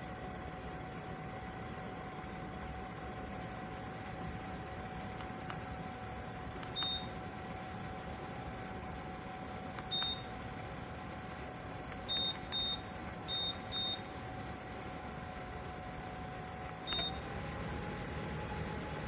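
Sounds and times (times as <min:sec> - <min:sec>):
short high beeps: 0:06.8 - 0:07.2, 0:09.9 - 0:10.3, 0:12.1 - 0:14.1, 0:16.9 - 0:17.2.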